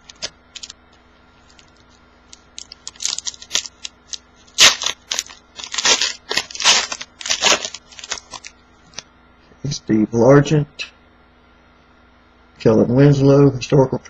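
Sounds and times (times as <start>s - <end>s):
wrapper tearing and crinkling: 0.0s - 0.8s, 1.5s - 8.5s.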